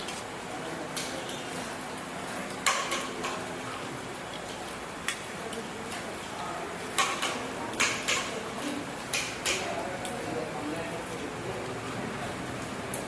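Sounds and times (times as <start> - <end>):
background murmur: 0.0 - 13.0
dishes and utensils clinking: 2.6 - 3.6.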